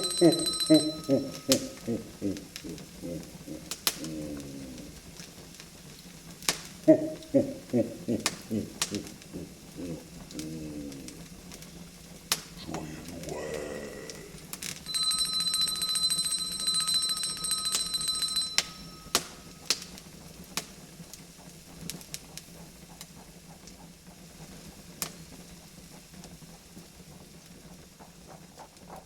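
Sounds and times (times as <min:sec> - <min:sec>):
small bell ringing rapidly: 0:00.0 - 0:02.0, 0:14.8 - 0:20.0
wood fire crackling and popping: 0:00.0 - 0:29.0.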